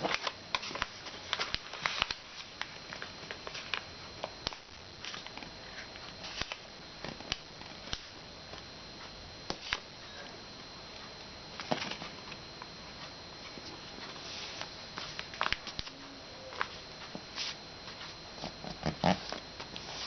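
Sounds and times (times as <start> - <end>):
paper crackling and rustling: 0.0 - 8.1, 11.6 - 12.4, 13.4 - 20.0.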